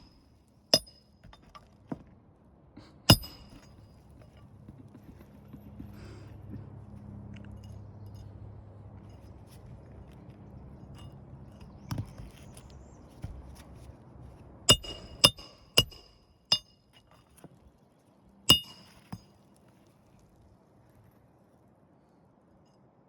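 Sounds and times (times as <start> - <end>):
hammer striking nails: 0.8 - 1.5, 3.1 - 3.8, 14.7 - 16.7, 18.5 - 19.2.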